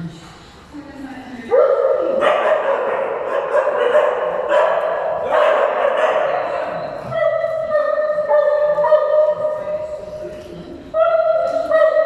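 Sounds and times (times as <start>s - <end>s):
dogs barking and yipping: 1.6s - 6.5s, 7.1s - 9.4s.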